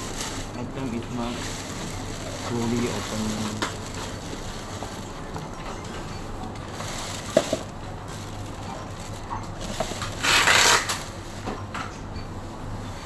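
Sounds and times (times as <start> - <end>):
wrapping crinkling: 0.0 - 11.4.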